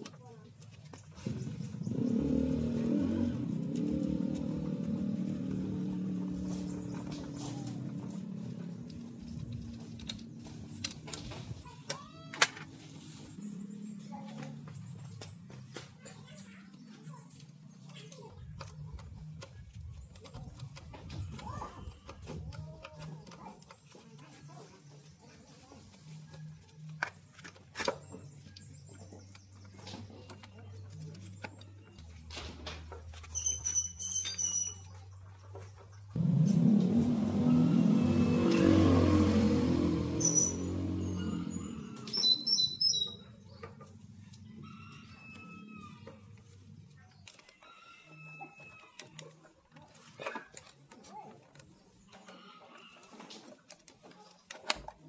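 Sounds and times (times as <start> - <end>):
bird chirps: 40.2 - 43.9.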